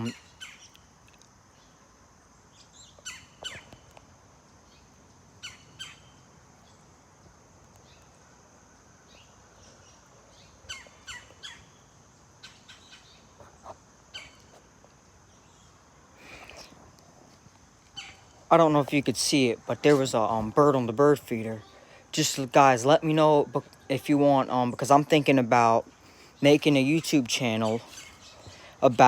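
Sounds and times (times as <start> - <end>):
birds calling: 0.0 - 0.8, 2.5 - 4.1, 4.7 - 6.8, 9.1 - 16.9, 17.8 - 29.0
faint steady high tone: 18.5 - 29.0.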